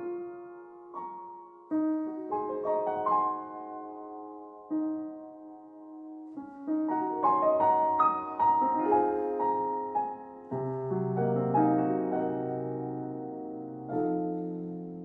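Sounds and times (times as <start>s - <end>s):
soft piano music: 0.0s - 15.0s.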